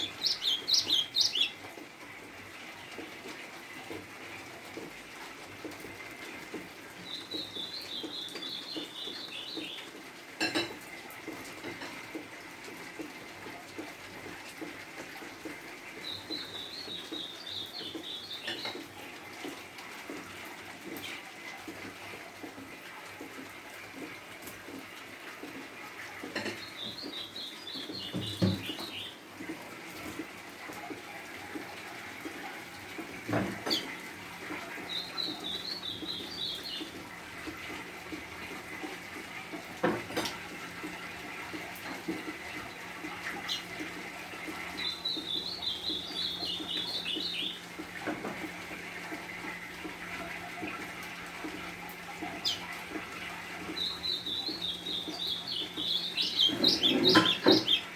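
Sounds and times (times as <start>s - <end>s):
bird singing chattering phrases: 0.0s - 1.6s, 26.5s - 29.2s, 33.6s - 37.0s, 44.7s - 47.6s, 52.2s - 57.9s
rain hiss: 0.0s - 57.9s.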